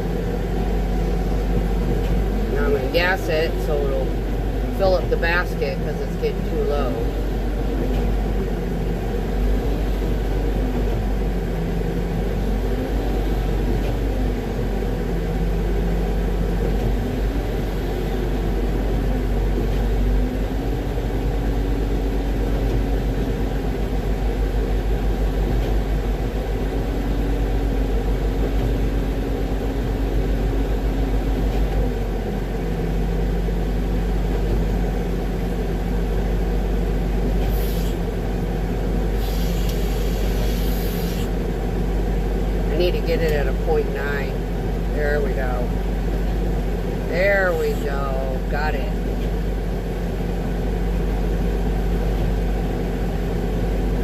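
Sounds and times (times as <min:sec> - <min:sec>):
diesel truck engine revving: 0:00.0 - 0:54.0.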